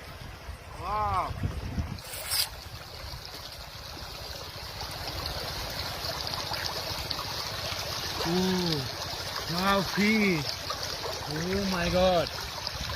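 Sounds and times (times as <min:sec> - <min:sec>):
water trickling and splashing: 0:00.0 - 0:12.9
sharp splash: 0:02.0 - 0:02.8.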